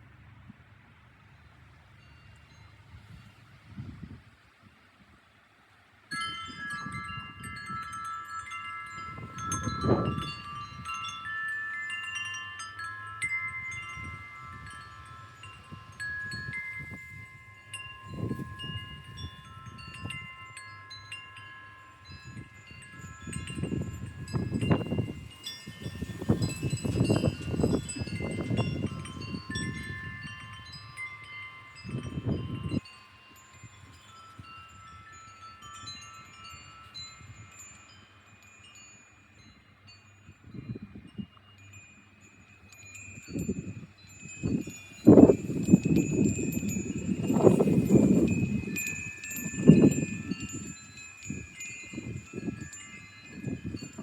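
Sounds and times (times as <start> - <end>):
wind chimes ringing: 1.4 - 5.4, 6.0 - 54.0
wind gusts on microphone: 8.6 - 12.3, 13.2 - 20.5, 22.0 - 32.9, 43.0 - 54.0.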